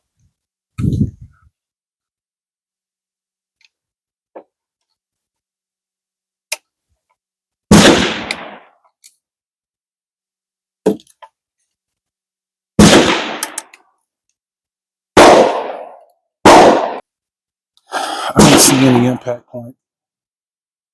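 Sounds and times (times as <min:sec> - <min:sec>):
gunshots: 0:07.7 - 0:08.7, 0:12.8 - 0:13.6, 0:15.2 - 0:17.0, 0:18.4 - 0:19.2.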